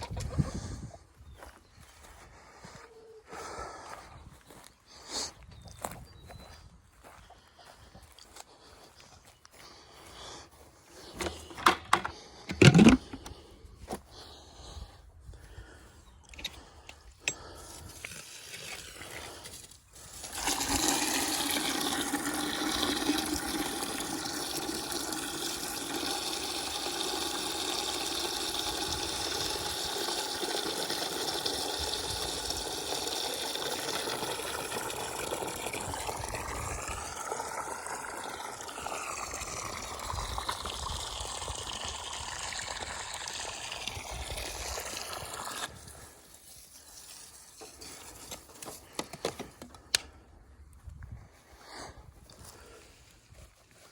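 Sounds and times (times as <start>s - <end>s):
water running into container: 11.0s - 13.4s, 17.8s - 49.1s.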